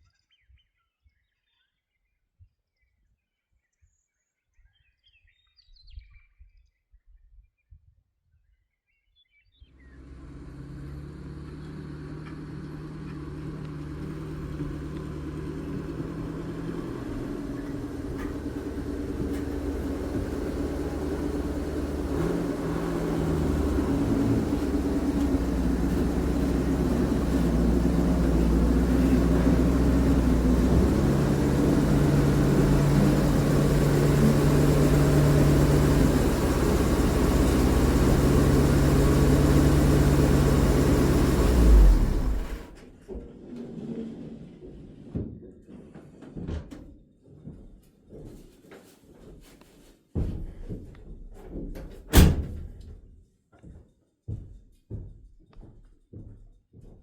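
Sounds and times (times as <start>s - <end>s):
engine running: 9.8s - 44.9s.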